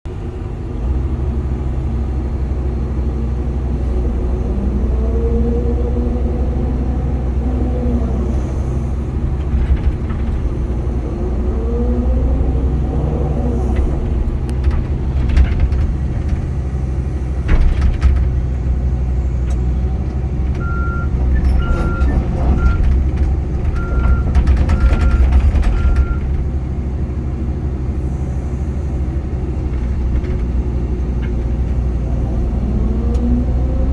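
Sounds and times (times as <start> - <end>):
excavator diesel engine running: 0.1 - 33.9
travel alarm beeping: 20.6 - 22.8.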